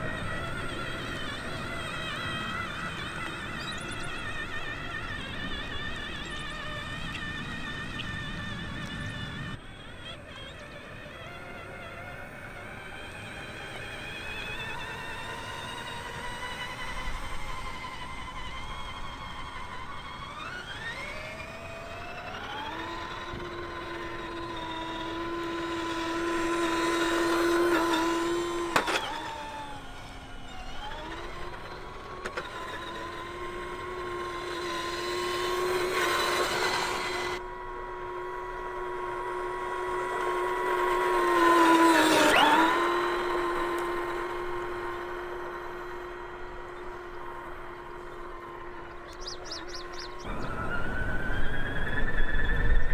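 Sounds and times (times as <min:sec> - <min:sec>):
electric motor whining: 0:00.0 - 0:52.9
tyres and movement noise: 0:00.0 - 0:52.9
click: 0:43.7 - 0:44.0.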